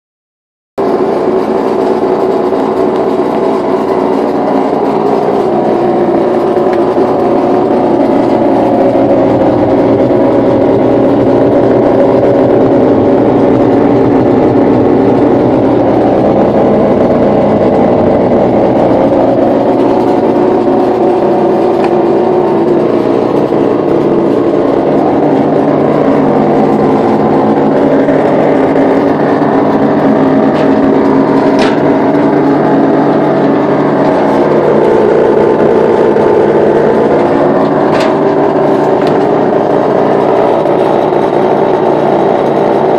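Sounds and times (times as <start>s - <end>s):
refrigerator droning loudly: 0.8s - 42.9s.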